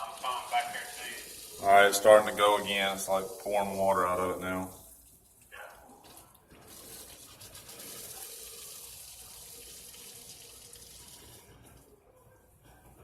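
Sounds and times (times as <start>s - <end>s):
water gushing from a valve: 0.0s - 5.0s, 6.5s - 11.6s.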